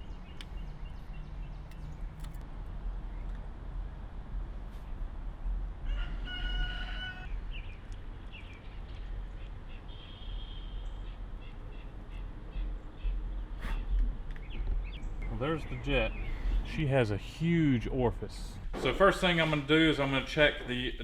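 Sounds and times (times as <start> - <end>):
bird calling: 7.1 - 16.8.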